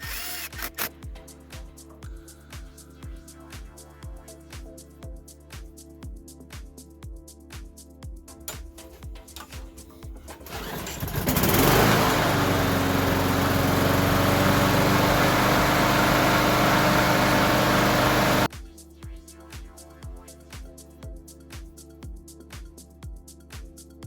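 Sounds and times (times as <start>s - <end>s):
electronic beat music: 1.0s - 10.4s, 18.5s - 24.0s
lawn mower engine running: 10.3s - 18.5s.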